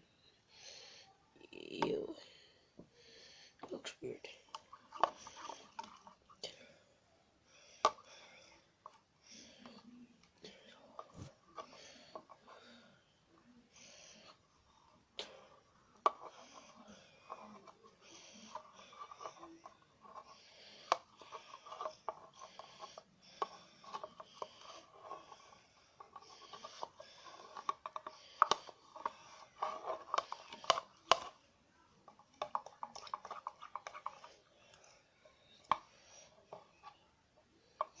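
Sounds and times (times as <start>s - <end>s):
slime squelching: 15.3s - 37.1s.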